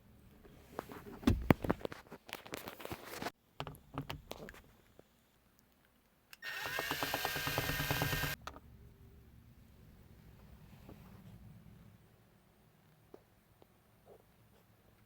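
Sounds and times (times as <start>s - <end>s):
power tool motor running: 6.4s - 8.4s.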